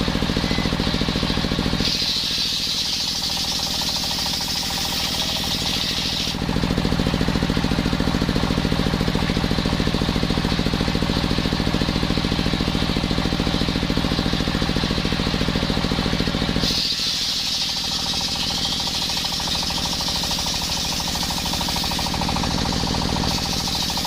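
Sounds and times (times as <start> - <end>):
sawmill engine running: 0.0 - 24.0
high hissing: 16.6 - 17.6.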